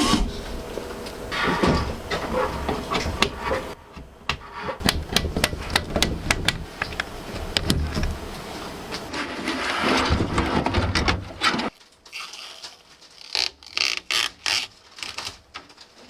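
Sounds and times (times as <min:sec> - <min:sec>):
computer parts clicking and knocking: 0:04.3 - 0:09.1.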